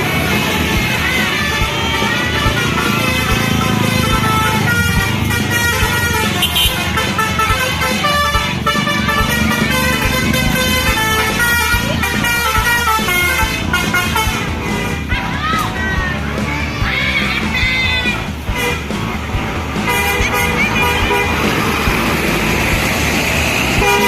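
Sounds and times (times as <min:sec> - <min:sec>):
musical air horn playing a tune: 0:00.0 - 0:15.1, 0:18.5 - 0:19.0, 0:19.8 - 0:22.7, 0:23.7 - 0:24.0.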